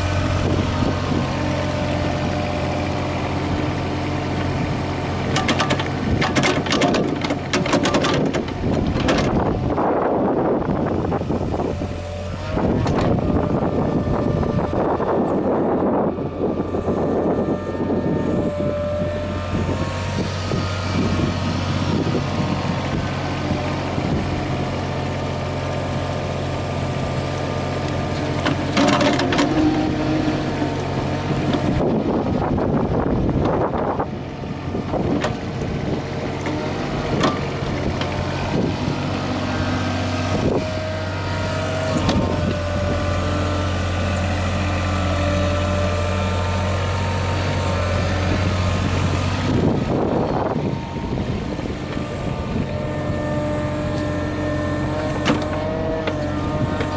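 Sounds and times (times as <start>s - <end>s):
excavator diesel engine running: 0.0s - 56.9s
knocks from working equipment: 5.3s - 9.4s.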